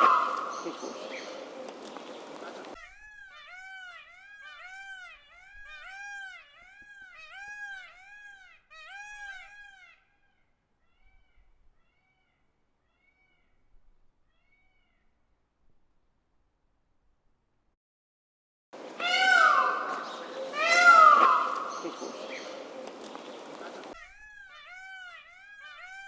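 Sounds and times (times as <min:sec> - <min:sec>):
peacock calling: 0:00.0 - 0:10.3, 0:18.8 - 0:26.0.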